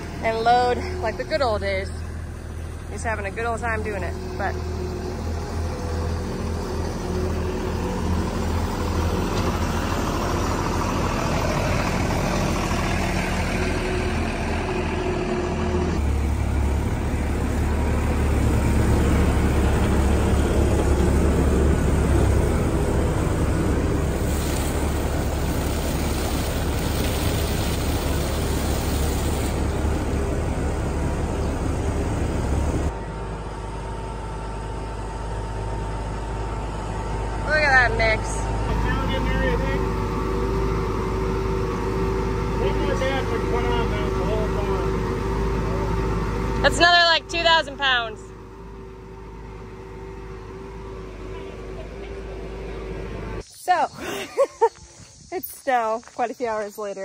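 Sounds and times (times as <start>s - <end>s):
skid loader loading feed: 0.0s - 53.5s
tractor engine running: 0.0s - 57.0s.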